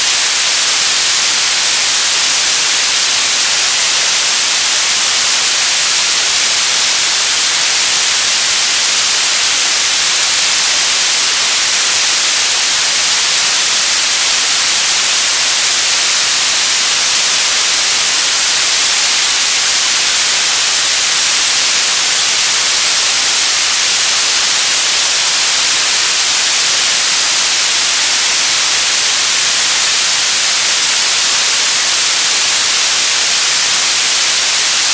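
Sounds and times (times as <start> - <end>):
radio static hiss: 0.0 - 34.9.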